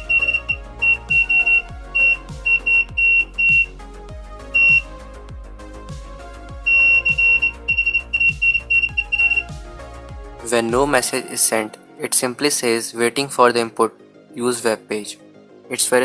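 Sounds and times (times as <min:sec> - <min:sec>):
buzzer beeping morse code: 0:00.0 - 0:03.7, 0:04.6 - 0:04.9, 0:06.7 - 0:09.5
soft background music with beat: 0:00.0 - 0:16.0.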